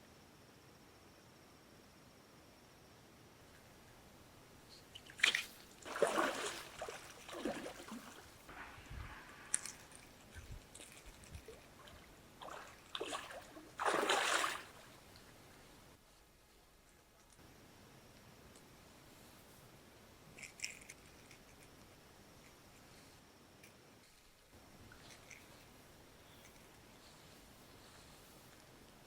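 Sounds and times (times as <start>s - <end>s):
water splashing: 5.0s - 15.1s.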